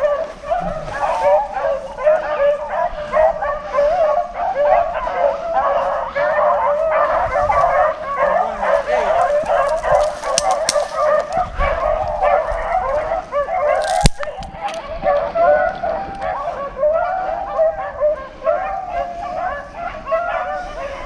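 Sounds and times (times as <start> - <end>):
hounds baying: 0.0 - 21.0
sharp crack: 9.6 - 11.4, 13.8 - 14.9.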